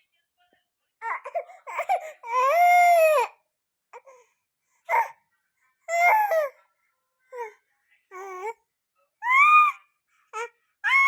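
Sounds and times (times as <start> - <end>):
infant crying: 1.0 - 3.4, 10.4 - 11.0.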